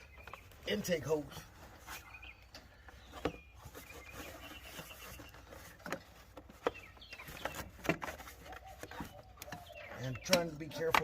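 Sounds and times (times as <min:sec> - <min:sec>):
light knocks and clicks of parts: 0:05.2 - 0:11.0.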